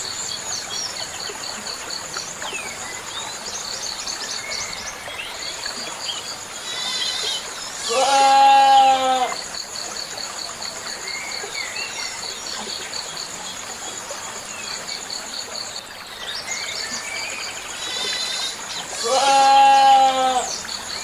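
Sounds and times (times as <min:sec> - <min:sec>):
insect trill: 0:00.0 - 0:21.0
goat bleating: 0:07.8 - 0:09.3, 0:19.0 - 0:20.5.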